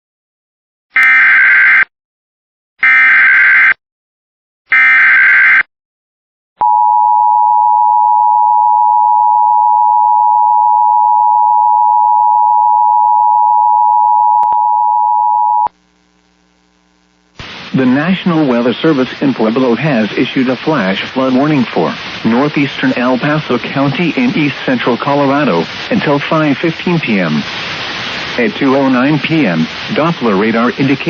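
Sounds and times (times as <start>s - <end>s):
faint hum: 14.4s - 30.2s.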